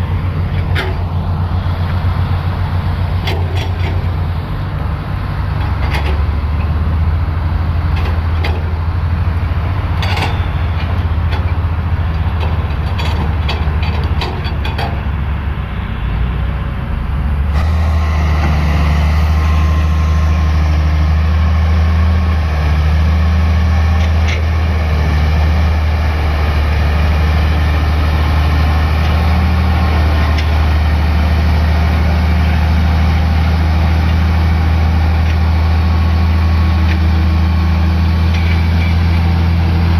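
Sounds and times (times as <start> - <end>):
diesel engine drone: 0.0 - 39.9
sharp clicks and knocks: 3.2 - 4.1, 7.9 - 8.7, 10.0 - 15.1.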